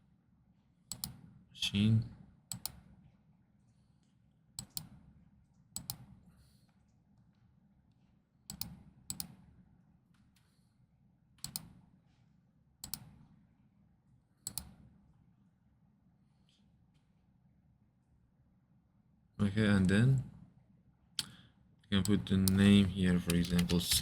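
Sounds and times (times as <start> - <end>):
computer mouse clicking: 0.9 - 1.2, 2.5 - 2.8, 4.6 - 5.0, 5.8 - 6.1, 8.5 - 9.4, 11.4 - 11.8, 12.8 - 13.1, 14.5 - 14.8, 22.0 - 24.0.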